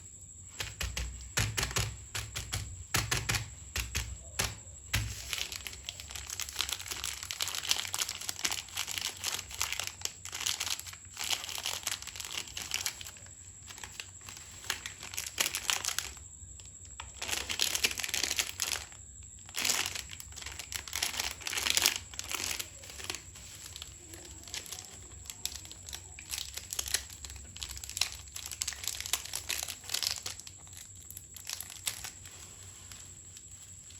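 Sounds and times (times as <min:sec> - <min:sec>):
plastic packets crackling and rustling: 0:00.5 - 0:33.9.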